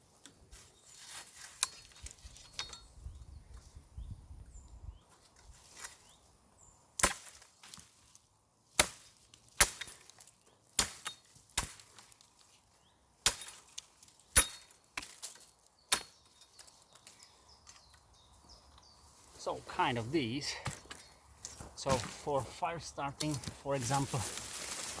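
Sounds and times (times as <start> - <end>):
machete chopping wood: 7.0 - 7.5, 8.8 - 12.0, 13.2 - 13.6.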